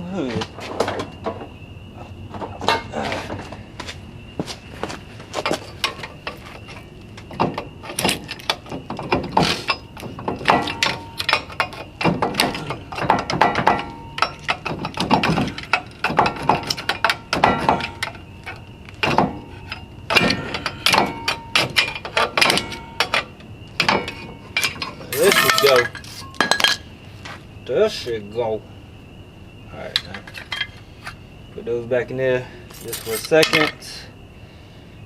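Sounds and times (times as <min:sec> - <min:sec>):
hand tools clanking on metal: 0:02.4 - 0:03.5, 0:05.3 - 0:26.9, 0:29.8 - 0:31.2, 0:32.7 - 0:34.0.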